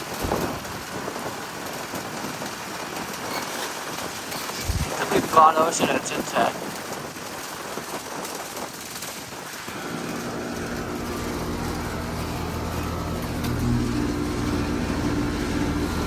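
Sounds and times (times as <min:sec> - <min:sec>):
compressor humming: 0:04.4 - 0:06.6, 0:09.5 - 0:16.0
fan air rushing: 0:04.5 - 0:06.4, 0:09.5 - 0:16.0.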